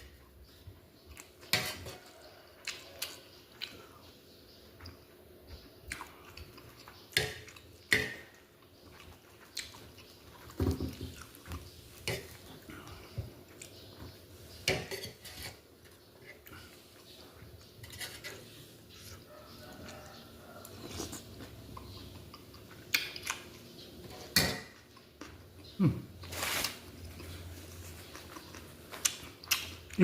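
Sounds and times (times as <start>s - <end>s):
cutlery clinking against dishes: 14.6s - 15.6s.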